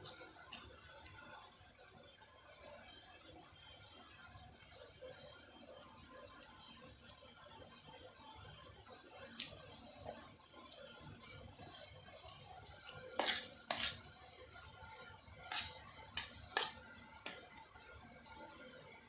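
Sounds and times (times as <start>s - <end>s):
cutlery clinking against a dish: 12.9s - 14.0s, 15.5s - 17.5s.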